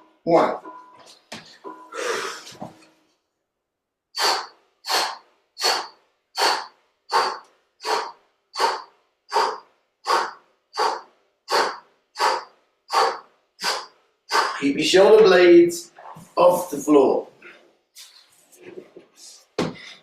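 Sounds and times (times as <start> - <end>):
person breathing out sharply: 1.9 - 2.6, 4.2 - 14.6.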